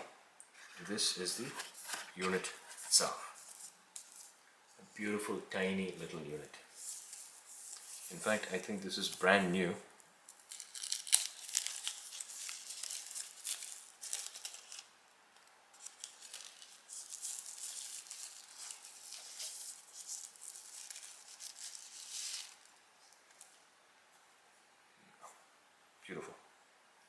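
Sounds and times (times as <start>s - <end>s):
plastic packaging crinkling: 0.6s - 4.4s, 6.7s - 9.4s, 10.0s - 23.6s.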